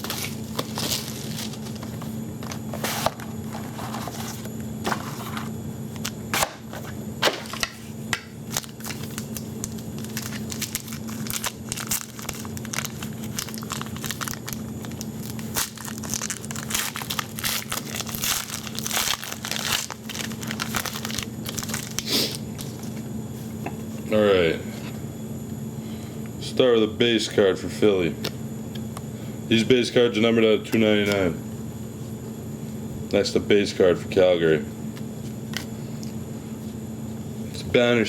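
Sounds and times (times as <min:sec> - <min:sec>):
card wrapper crinkling: 0:00.0 - 0:05.4, 0:08.5 - 0:22.9
steady low hum: 0:00.0 - 0:38.0
wrapper snapping: 0:08.5 - 0:22.7.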